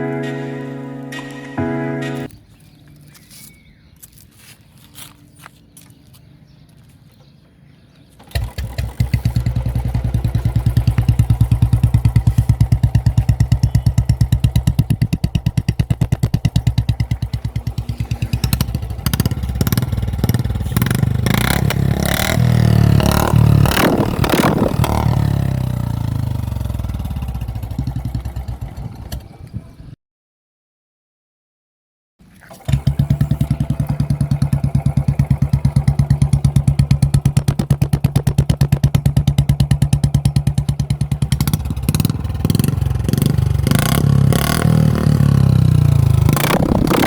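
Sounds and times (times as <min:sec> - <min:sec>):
motorcycle engine idling and revving: 0:06.8 - 0:30.0, 0:32.6 - 0:47.0.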